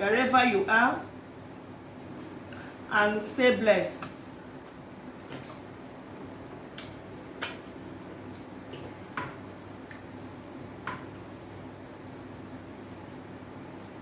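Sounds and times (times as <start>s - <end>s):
faint room hum: 0.0s - 14.0s
mouth clicks and smacks: 6.7s - 9.0s.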